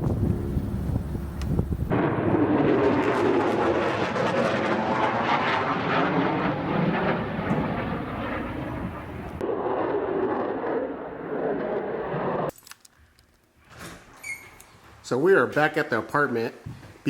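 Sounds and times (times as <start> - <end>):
jet aircraft roar: 0.0 - 12.5.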